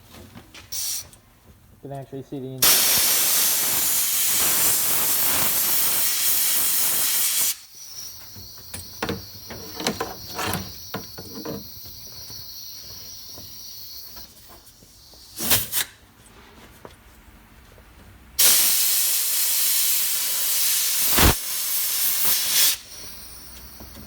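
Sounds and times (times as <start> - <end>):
sandblaster hissing: 2.6 - 16.0, 18.4 - 23.9
thin high whistle: 7.3 - 9.5, 22.2 - 24.0.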